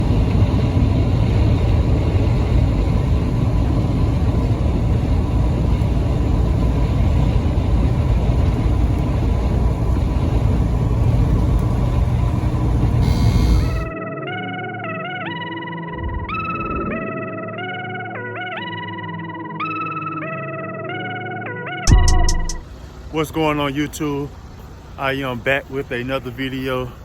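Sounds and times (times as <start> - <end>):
truck engine and road rumble: 0.0 - 13.9, 22.1 - 27.0.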